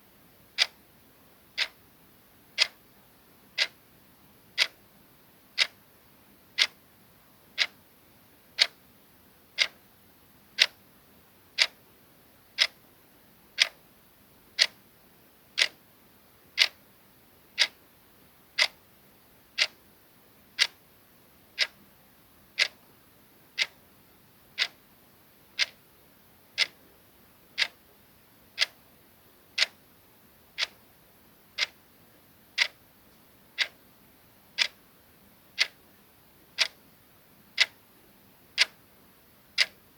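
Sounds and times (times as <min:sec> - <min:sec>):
clock ticking: 0:00.6 - 0:00.8, 0:01.6 - 0:01.8, 0:02.6 - 0:02.8, 0:03.6 - 0:03.8, 0:04.6 - 0:04.8, 0:06.6 - 0:06.8, 0:08.6 - 0:08.8, 0:09.6 - 0:09.8, 0:10.6 - 0:10.8, 0:11.6 - 0:11.8, 0:12.6 - 0:12.8, 0:13.6 - 0:13.8, 0:14.6 - 0:14.8, 0:15.6 - 0:15.8, 0:16.6 - 0:16.8, 0:17.6 - 0:17.8, 0:18.6 - 0:18.8, 0:19.6 - 0:19.8, 0:20.6 - 0:20.8, 0:21.6 - 0:21.8, 0:22.6 - 0:22.8, 0:23.6 - 0:23.8, 0:24.6 - 0:24.8, 0:25.6 - 0:25.8, 0:26.6 - 0:26.8, 0:27.6 - 0:27.8, 0:28.6 - 0:28.8, 0:29.6 - 0:29.8, 0:30.6 - 0:30.8, 0:31.6 - 0:31.8, 0:32.6 - 0:32.8, 0:33.6 - 0:33.8, 0:34.6 - 0:34.8, 0:35.6 - 0:35.8, 0:36.6 - 0:36.8, 0:37.6 - 0:37.8, 0:38.6 - 0:38.8, 0:39.6 - 0:39.8.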